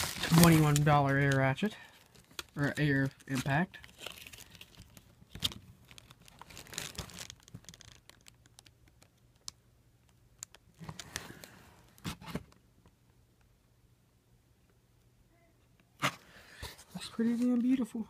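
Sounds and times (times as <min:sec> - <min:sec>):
packaging crinkling and tearing: 0:00.0 - 0:12.3.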